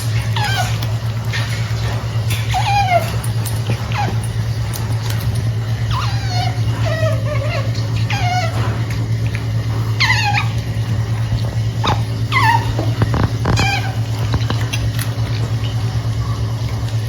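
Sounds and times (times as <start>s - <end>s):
steady low hum: 0.0s - 17.0s
otter squeaky calls: 11.8s - 14.9s.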